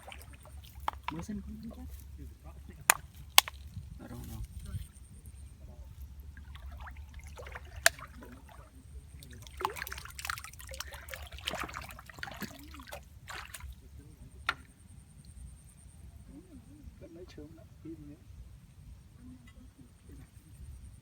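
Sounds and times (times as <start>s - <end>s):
water trickling and splashing: 0.0s - 14.1s.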